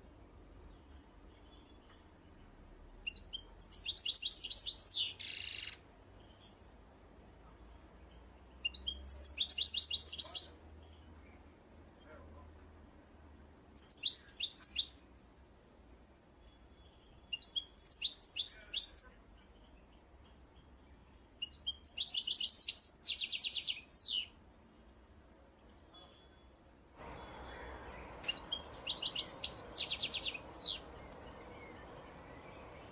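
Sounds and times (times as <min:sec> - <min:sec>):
songbird trilling: 0:03.1 - 0:05.8, 0:08.7 - 0:10.6, 0:13.8 - 0:15.0, 0:17.3 - 0:19.2, 0:21.4 - 0:24.3, 0:27.2 - 0:30.9.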